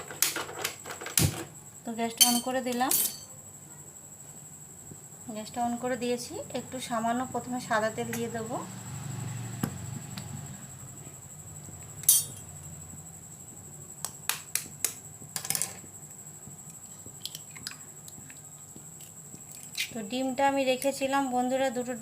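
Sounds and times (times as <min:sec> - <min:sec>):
utensils clinking on cookware: 0:02.2 - 0:03.3, 0:12.0 - 0:12.5.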